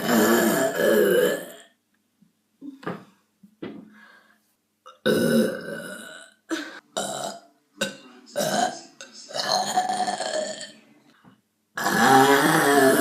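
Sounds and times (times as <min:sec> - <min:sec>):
person burping: 0:00.0 - 0:01.8, 0:04.9 - 0:08.7, 0:09.3 - 0:10.7, 0:11.8 - 0:13.0.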